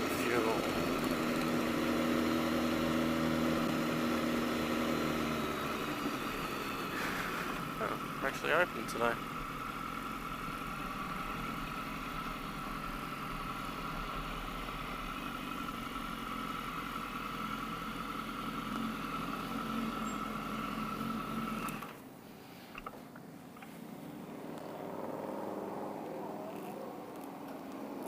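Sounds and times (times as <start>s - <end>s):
motorcycle engine idling: 0.0s - 22.0s.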